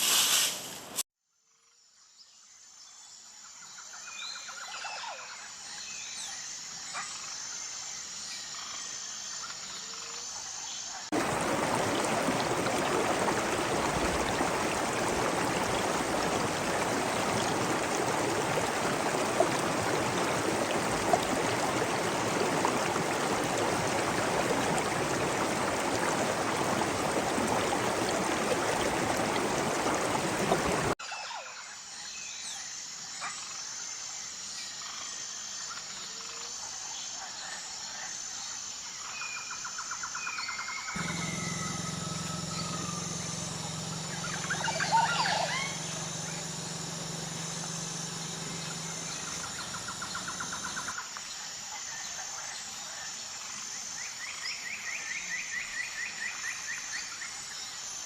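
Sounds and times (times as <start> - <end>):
flowing water rushing: 11.1 - 31.0, 41.0 - 51.0
high pulsing insect call: 37.9 - 52.2.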